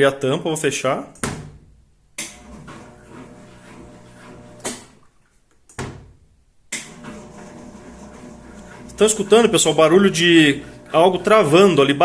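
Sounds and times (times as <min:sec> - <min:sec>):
drain pump humming: 0:02.4 - 0:04.8, 0:06.8 - 0:12.0.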